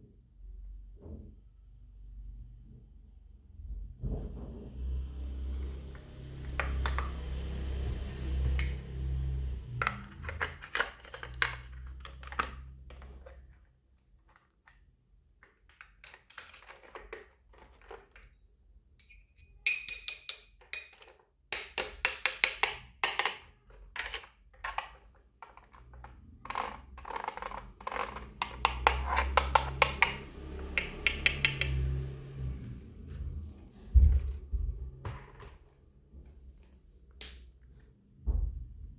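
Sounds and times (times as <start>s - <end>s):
small parts clicking and clattering: 9.7s - 13.6s, 14.2s - 18.4s, 19.0s - 30.2s.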